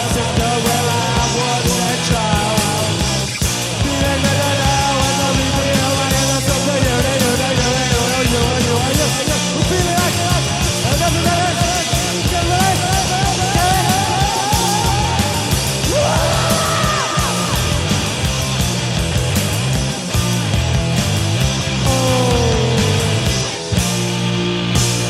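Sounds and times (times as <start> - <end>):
heavy metal band playing: 0.0 - 25.0
wavering high lead guitar: 0.0 - 25.0.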